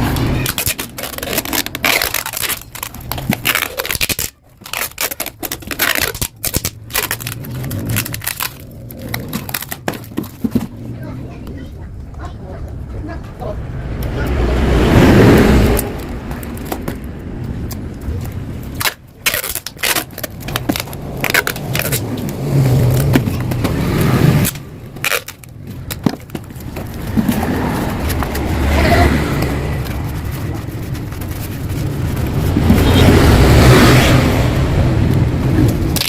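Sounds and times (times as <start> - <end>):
motorcycle engine revving: 32.0 - 36.0.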